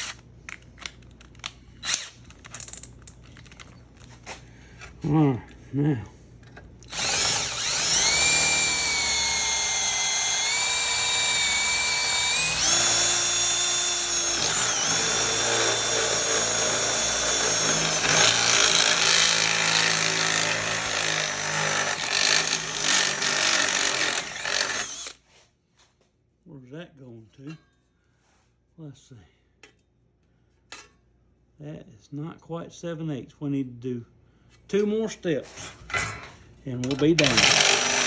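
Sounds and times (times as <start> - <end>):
power drill boring into metal case: 6.9 - 25.2, 37.2 - 38.0.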